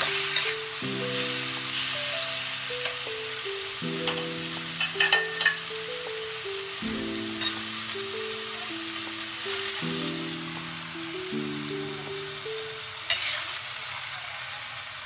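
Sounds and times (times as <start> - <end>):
soft background music: 0.0 - 13.2
potatoes sizzling in a wok: 0.0 - 15.0.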